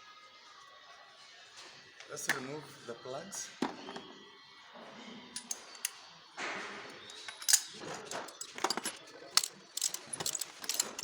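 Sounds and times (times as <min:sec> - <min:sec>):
hand tools clinking on metal: 0:07.1 - 0:11.0.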